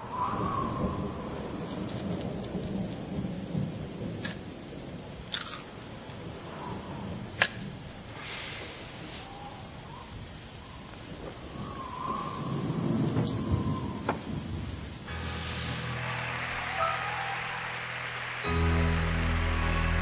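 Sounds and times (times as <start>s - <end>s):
thunder rumbling: 0.0s - 8.2s, 9.5s - 16.6s
rain falling: 0.0s - 20.0s
sharp thunder cracks: 11.2s - 15.1s.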